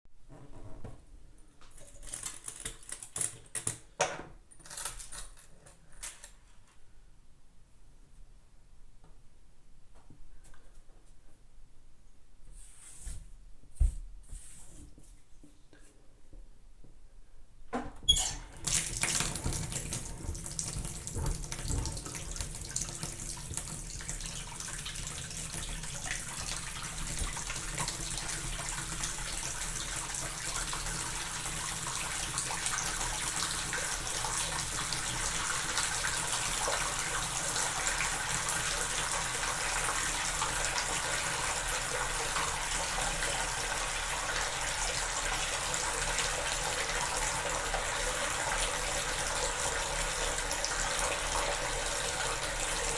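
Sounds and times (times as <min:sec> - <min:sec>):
tap water running into bathtub: 0:17.8 - 0:52.9.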